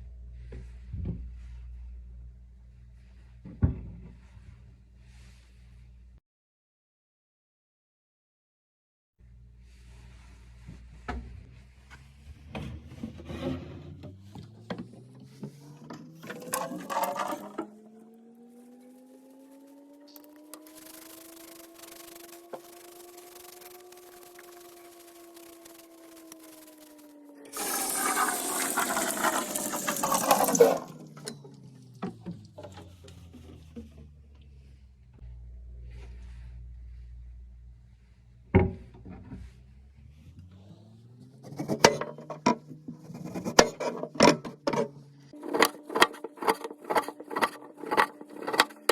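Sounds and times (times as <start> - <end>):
rubbing and scraping: 9.7 - 14.5, 15.3 - 17.7, 20.3 - 31.3, 32.1 - 48.9
water pouring into plastic bottle: 16.2 - 17.7, 27.5 - 31.3
low hum rising in pitch: 30.9 - 41.8.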